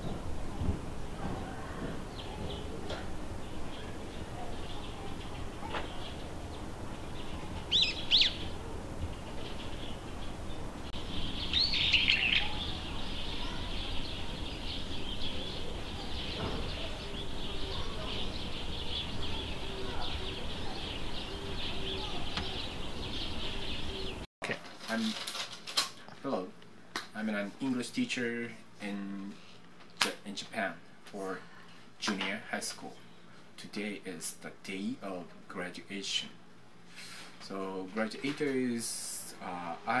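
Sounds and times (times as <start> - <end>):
birds chirping: 0.0 - 24.3
sharp bird calls: 3.4 - 24.2.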